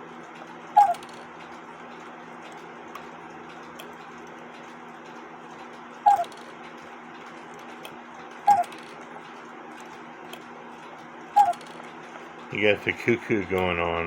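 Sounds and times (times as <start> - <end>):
cuckoo clock calls: 0.7 - 1.2, 6.1 - 6.5, 8.4 - 8.9, 11.4 - 11.8
clock mechanism click: 5.6 - 10.5, 11.4 - 12.0.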